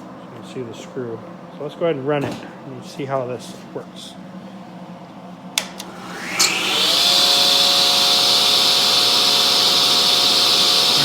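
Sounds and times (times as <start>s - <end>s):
table saw switch click: 5.6s - 6.7s
table saw motor whining: 5.8s - 11.0s.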